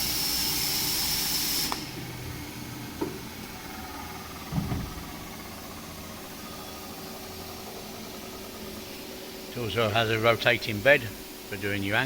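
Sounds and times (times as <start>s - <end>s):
low machine hum: 0.8s - 12.0s
knock: 4.5s - 5.0s.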